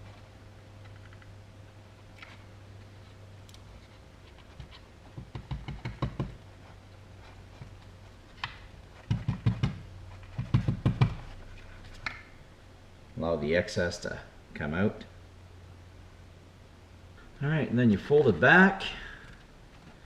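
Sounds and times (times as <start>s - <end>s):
knocks and taps on plastic housing: 5.2s - 6.4s, 9.1s - 11.2s.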